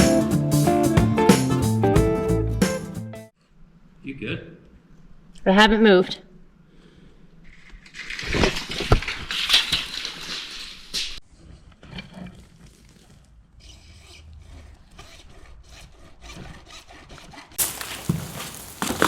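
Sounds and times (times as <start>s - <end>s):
rough scraping and rubbing: 17.4s - 19.0s
rustling: 17.6s - 19.0s.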